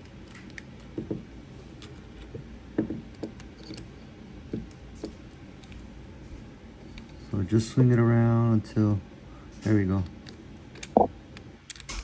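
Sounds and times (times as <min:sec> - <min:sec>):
metal parts clicking and knocking: 0:11.7 - 0:12.0.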